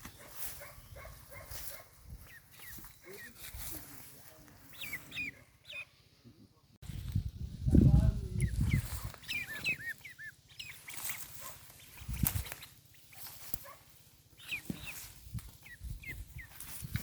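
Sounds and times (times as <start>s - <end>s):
small animal squeaky calls: 0.4s - 3.8s, 4.6s - 6.0s, 8.3s - 17.0s.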